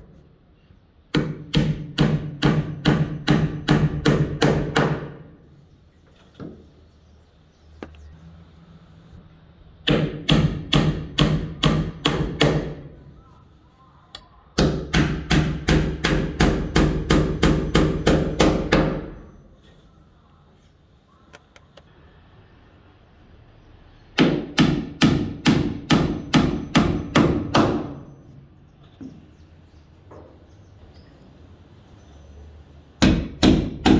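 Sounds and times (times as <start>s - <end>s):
hammer striking nail into wood: 1.1s - 5.3s, 9.8s - 12.9s, 14.6s - 19.2s, 24.2s - 28.1s, 33.0s - 33.9s.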